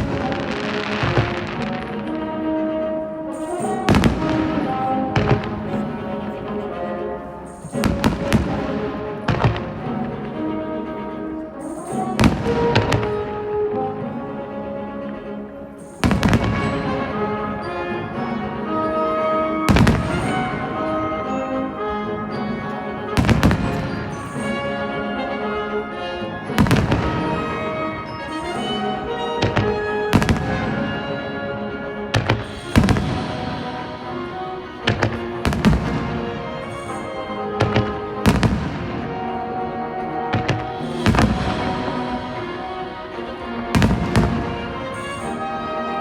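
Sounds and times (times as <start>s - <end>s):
firework shells booming: 0.0s - 2.1s, 3.3s - 6.6s, 7.5s - 10.1s, 15.8s - 17.6s, 19.6s - 21.3s, 23.0s - 25.0s, 26.5s - 39.4s, 40.2s - 45.6s
music: 0.0s - 46.0s.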